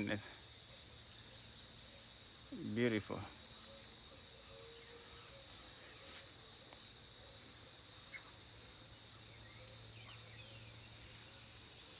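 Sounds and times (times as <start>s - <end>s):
insects trilling: 0.0s - 11.9s.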